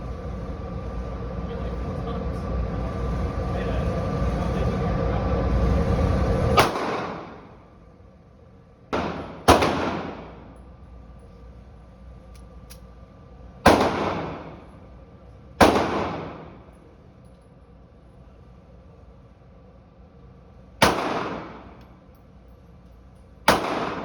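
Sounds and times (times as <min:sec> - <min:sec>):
gunshots: 0:06.6 - 0:07.5, 0:08.9 - 0:10.4, 0:13.7 - 0:14.7, 0:15.6 - 0:16.7, 0:20.8 - 0:21.8, 0:23.5 - 0:24.0.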